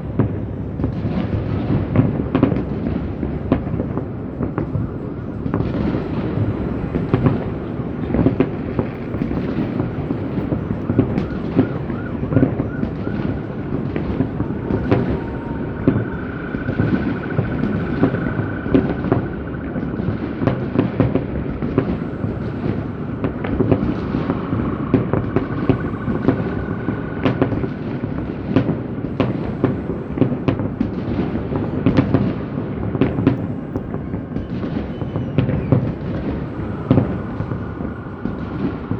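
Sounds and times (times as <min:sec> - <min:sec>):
fireworks booms and bangs: 0:00.0 - 0:38.9
faint high whistle: 0:14.2 - 0:20.1, 0:21.9 - 0:28.2, 0:33.2 - 0:38.9.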